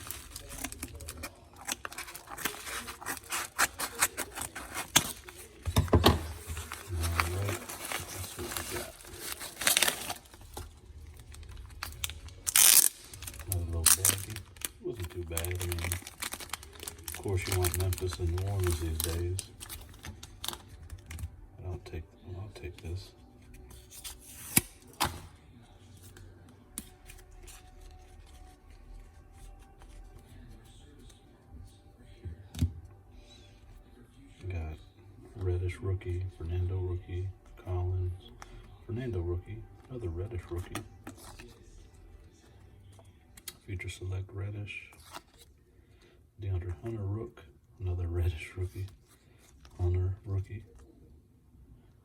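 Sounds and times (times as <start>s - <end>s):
packaging rustling: 0.0s - 21.3s.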